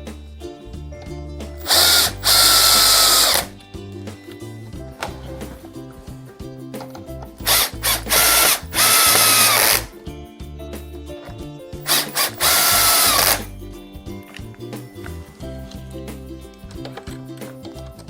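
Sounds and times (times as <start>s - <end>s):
power drill driving screws into wood: 1.6s - 3.5s, 7.4s - 9.9s, 11.8s - 13.5s.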